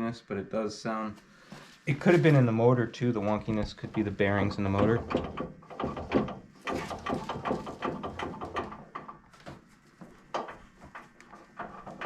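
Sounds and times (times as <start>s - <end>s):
knocks clicks and light rattles: 3.2s - 12.0s.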